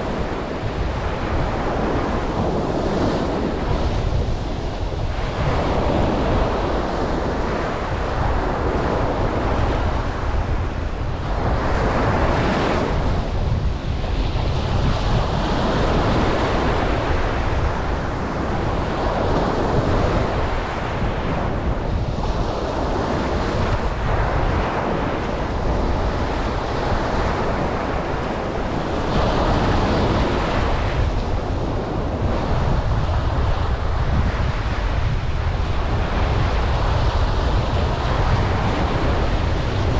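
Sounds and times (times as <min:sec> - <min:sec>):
ocean surf breaking on beach: 0:00.0 - 0:39.9.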